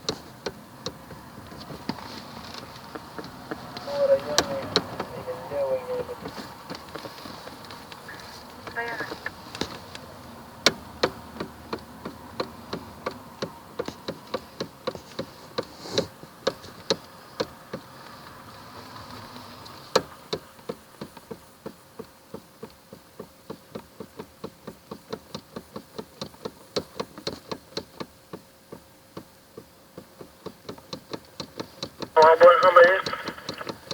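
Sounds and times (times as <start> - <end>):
sharp steering knocks: 0.0 - 5.1.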